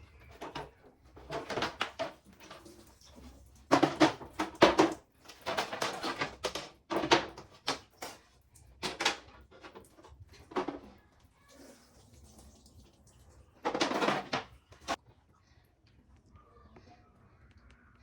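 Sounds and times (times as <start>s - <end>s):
fridge parts knocking and clattering: 0.0s - 11.0s, 13.6s - 15.0s.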